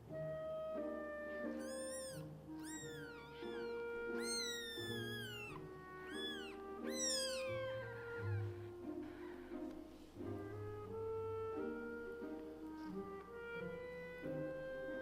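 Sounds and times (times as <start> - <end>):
background music: 0.0 - 15.0
kitten meowing: 1.4 - 9.7.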